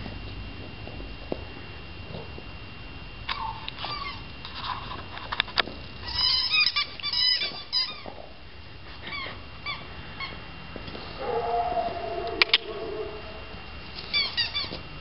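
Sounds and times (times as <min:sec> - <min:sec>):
lower longer pitched sound: 0:11.2 - 0:13.8.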